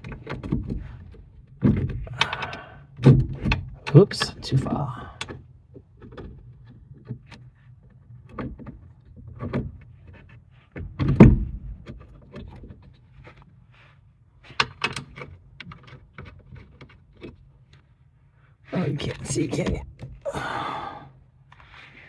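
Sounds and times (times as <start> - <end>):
hand tools clicking and knocking: 1.8 - 2.6.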